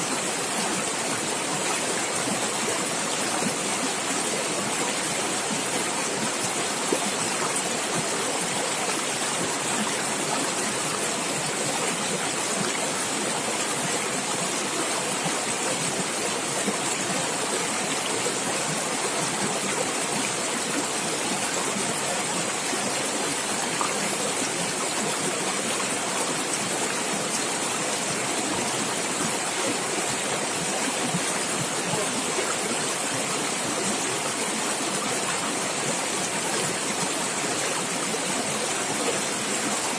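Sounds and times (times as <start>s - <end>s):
water rushing over rocks: 0.0s - 39.9s.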